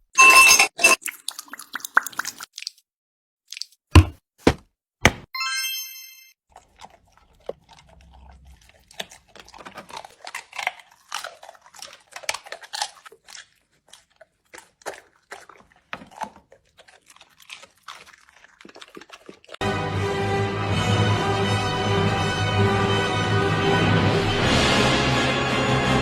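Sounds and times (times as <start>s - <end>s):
animal crunching and chewing: 6.5s - 19.6s.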